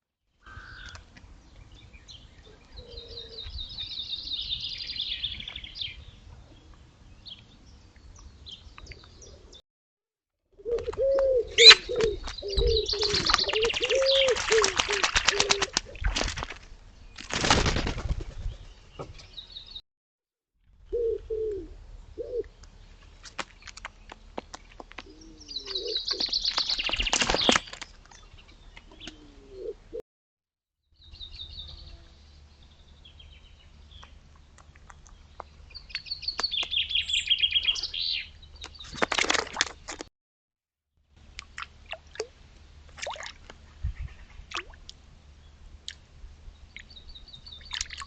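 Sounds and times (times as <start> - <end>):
low cooing: 10.6 - 15.7, 20.9 - 22.5, 29.1 - 30.0
bird wingbeats: 10.7 - 19.3, 23.2 - 28.0
harsh chattering bird calls: 11.5 - 15.7, 25.0 - 29.2, 33.9 - 39.1.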